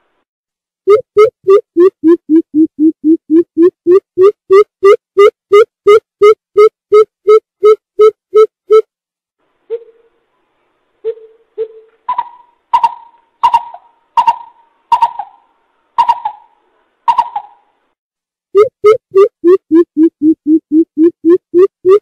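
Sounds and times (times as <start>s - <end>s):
bird low hoots: 9.7s - 10.1s.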